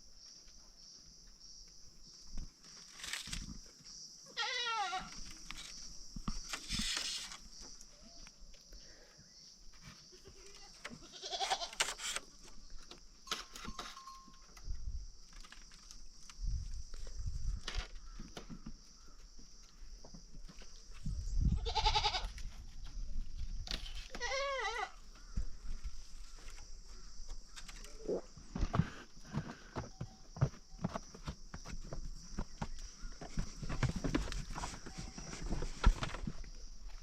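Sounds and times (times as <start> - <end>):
goat bleating: 4.4 - 5.1, 10.3 - 11.8, 21.6 - 22.3, 24.2 - 25.0.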